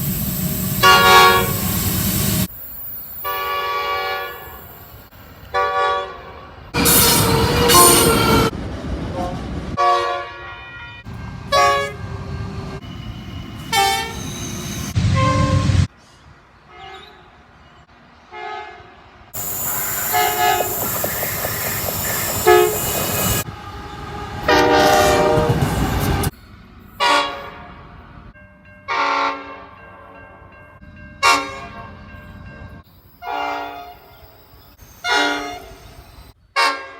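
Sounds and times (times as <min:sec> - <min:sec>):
rumble of passing train: 0:00.0 - 0:36.5
locomotive air horn blasts: 0:00.8 - 0:01.9, 0:03.3 - 0:04.6, 0:05.5 - 0:08.5, 0:09.2 - 0:12.0, 0:13.7 - 0:14.2, 0:15.0 - 0:15.9, 0:18.3 - 0:26.2, 0:33.3 - 0:34.0, 0:35.0 - 0:35.8.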